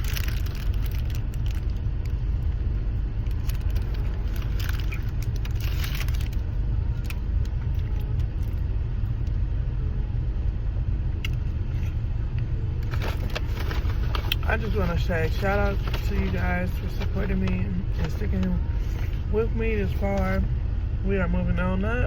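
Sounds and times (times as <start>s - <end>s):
steady low rumble: 0.0s - 22.0s
clicks and rustles of eating: 3.2s - 8.6s, 12.8s - 19.2s.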